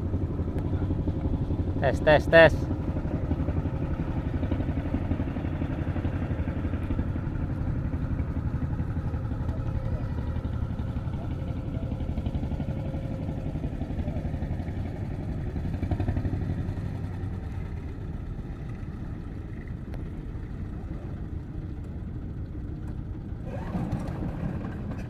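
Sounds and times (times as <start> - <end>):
small boat engine running: 0.0 - 25.0.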